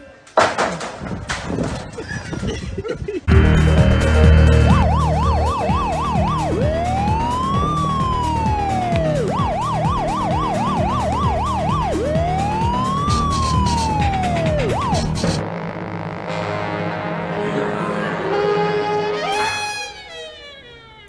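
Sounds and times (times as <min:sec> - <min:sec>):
emergency vehicle siren: 0:04.6 - 0:15.5.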